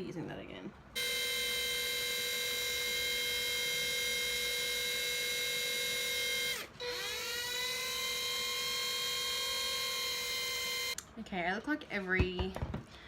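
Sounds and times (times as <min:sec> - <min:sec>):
cordless drill whining: 0:01.0 - 0:11.0.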